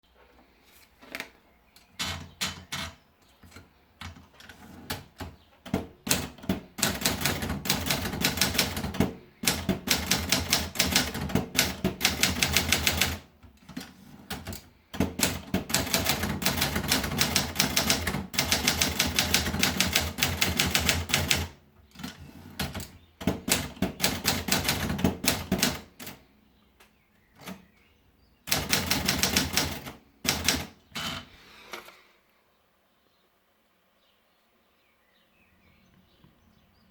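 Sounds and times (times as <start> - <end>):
typewriter typing: 2.0 - 26.2, 28.5 - 31.3.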